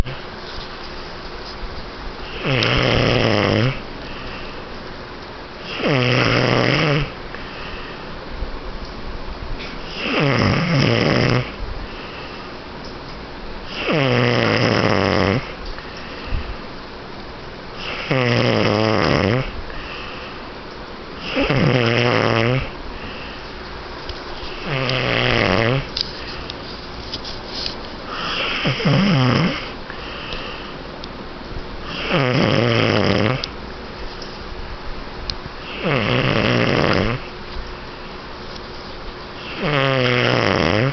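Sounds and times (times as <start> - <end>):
person snoring: 2.3 - 3.8, 5.6 - 7.2, 9.8 - 11.6, 13.7 - 15.6, 17.8 - 20.2, 21.2 - 23.3, 24.5 - 25.9, 28.1 - 30.7, 31.9 - 33.4, 35.6 - 37.3, 39.4 - 40.9
quiet breathing: 3.8 - 4.9, 7.3 - 8.3, 11.5 - 12.7, 15.4 - 16.8, 19.5 - 20.6, 22.6 - 31.0.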